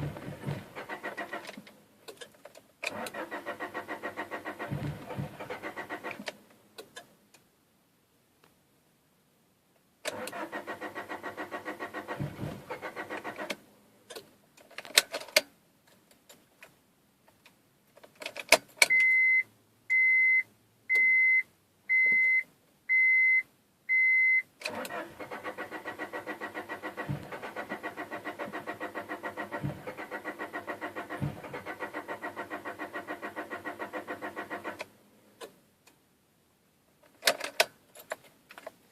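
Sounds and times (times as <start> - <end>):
starter cranking engine: 0.0 - 1.6, 2.9 - 6.2, 10.1 - 13.6, 24.7 - 34.8
car warning chime beeps: 18.9 - 24.5.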